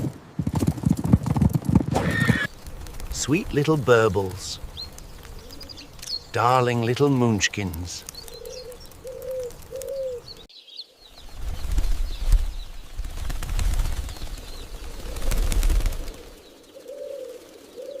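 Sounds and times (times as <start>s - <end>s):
wings flapping: 0.0s - 10.5s, 11.1s - 18.0s
pigeons cooing: 2.0s - 7.1s, 7.7s - 10.5s, 14.1s - 18.0s.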